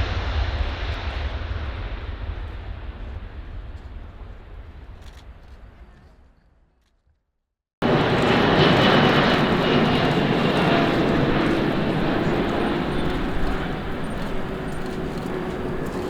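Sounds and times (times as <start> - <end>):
jet engines running: 7.8 - 16.0.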